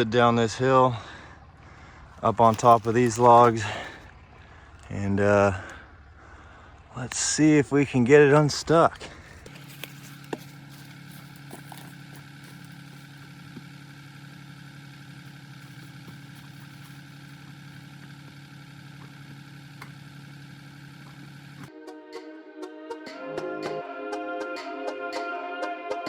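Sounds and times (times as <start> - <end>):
diesel engine running: 0.0 - 21.7.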